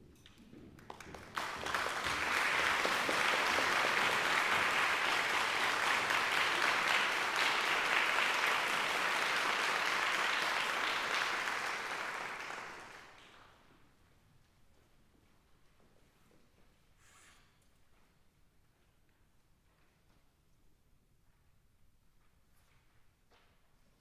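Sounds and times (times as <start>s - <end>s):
audience applauding: 0.8s - 13.4s.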